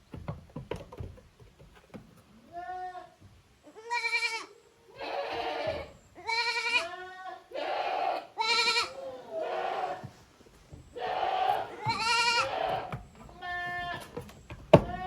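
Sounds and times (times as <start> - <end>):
goat kids bleating: 2.4 - 10.3, 10.9 - 15.0.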